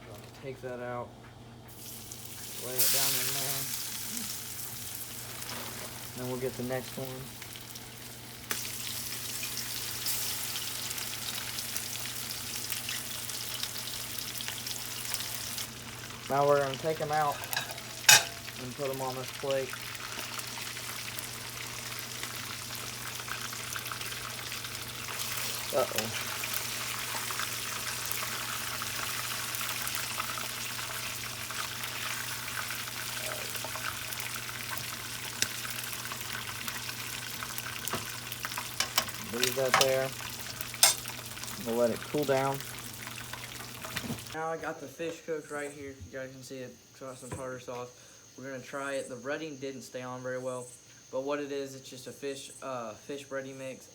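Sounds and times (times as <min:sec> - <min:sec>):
fish fillets frying in oil: 0:01.8 - 0:44.4
low steady hum: 0:15.0 - 0:20.0.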